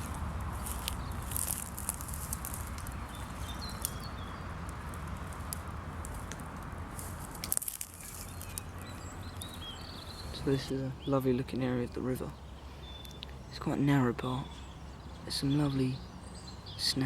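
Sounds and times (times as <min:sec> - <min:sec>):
small clicks and rustles: 0:00.0 - 0:09.6
faint bird chirps: 0:12.2 - 0:17.0.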